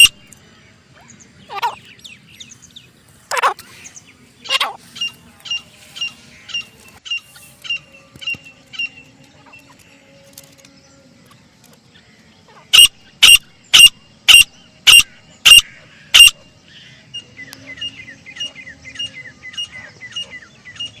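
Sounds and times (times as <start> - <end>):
bird calling shrill notes: 3.3 - 9.9, 12.5 - 16.4.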